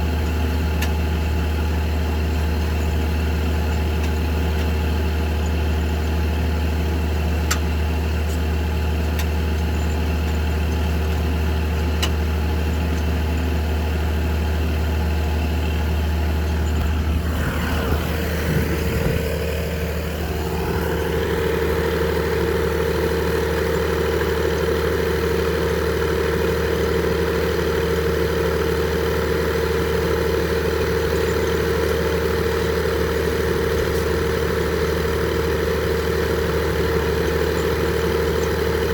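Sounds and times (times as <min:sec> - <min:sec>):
sawmill engine droning: 0:00.0 - 0:38.9
spinning saw whine: 0:16.6 - 0:38.9.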